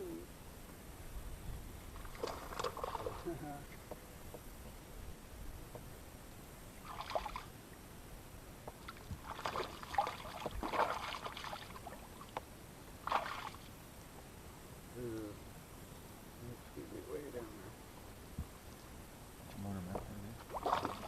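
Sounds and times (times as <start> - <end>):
water splashing: 2.0 - 3.4, 6.8 - 7.6, 8.7 - 12.3, 13.0 - 13.7, 20.4 - 21.0.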